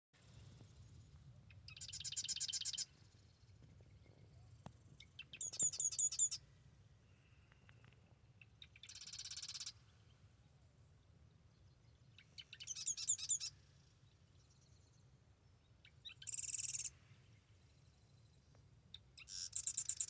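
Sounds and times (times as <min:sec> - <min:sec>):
marsh wren trilled song: 0:01.7 - 0:02.9, 0:05.2 - 0:06.4, 0:08.6 - 0:09.8, 0:12.3 - 0:13.5, 0:16.0 - 0:17.0, 0:19.2 - 0:20.0.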